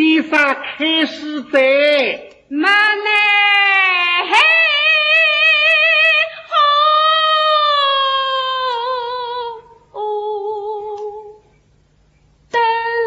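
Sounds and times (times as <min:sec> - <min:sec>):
high voice singing long notes: 0:03.4 - 0:11.5.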